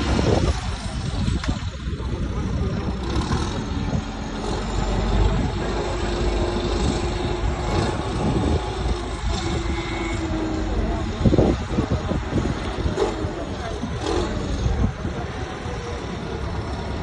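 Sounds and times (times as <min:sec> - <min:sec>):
outdoor noise: 0:00.0 - 0:17.0
vehicle engine running: 0:00.0 - 0:17.0.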